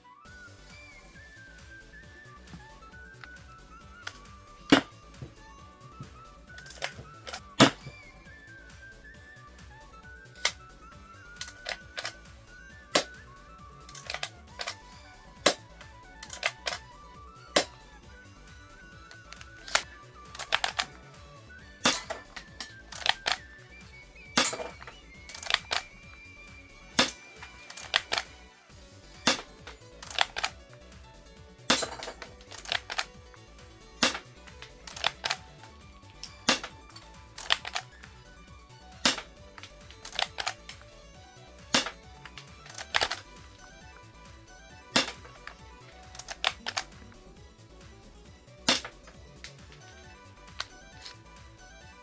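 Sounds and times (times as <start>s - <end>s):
toy pistol plastic clicks: 4.0s - 5.0s, 6.6s - 8.1s, 11.3s - 12.3s, 12.9s - 17.9s, 18.8s - 21.1s, 21.9s - 23.6s, 24.2s - 28.4s, 29.3s - 30.8s, 31.7s - 33.4s, 34.0s - 38.1s, 39.0s - 41.0s, 41.7s - 43.8s, 45.0s - 47.2s, 48.6s - 51.2s.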